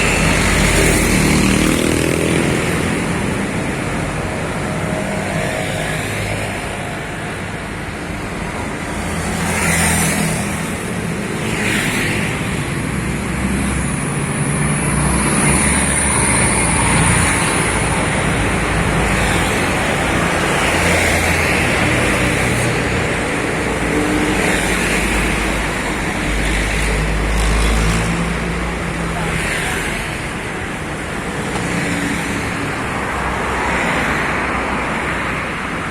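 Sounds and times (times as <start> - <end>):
traffic passing: 0.0 - 35.9.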